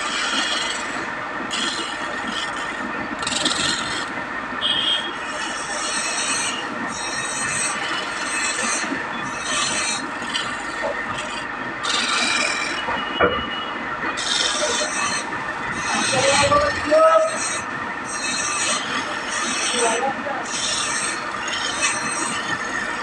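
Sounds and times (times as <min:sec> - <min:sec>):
rasp scraping wood: 0:14.2 - 0:22.6.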